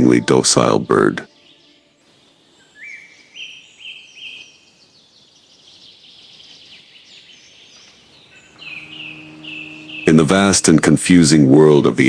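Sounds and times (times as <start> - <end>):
birds chirping and twittering: 0.0 - 12.0
bird whistled notes: 6.7 - 10.6.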